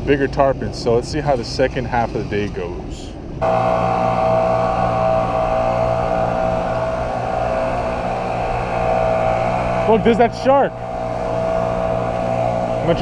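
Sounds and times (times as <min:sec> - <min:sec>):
boat engine running: 0:03.4 - 0:13.0.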